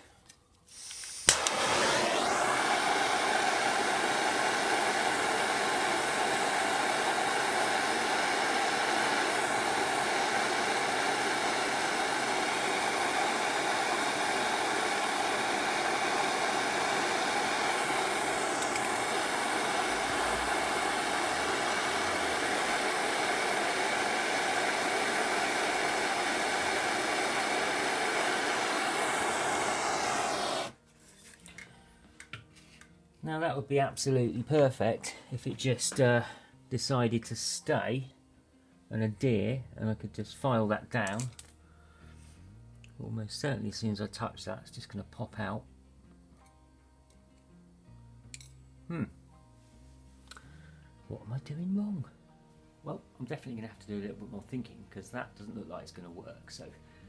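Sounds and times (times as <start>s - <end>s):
blowtorch hissing: 0.7s - 30.8s.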